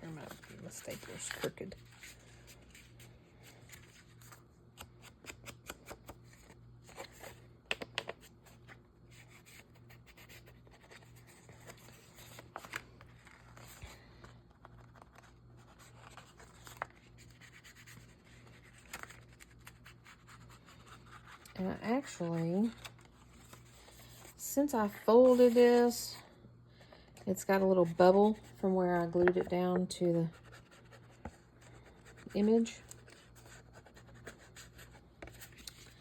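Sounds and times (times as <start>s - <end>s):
paper rustling and creasing: 0.1s - 25.9s.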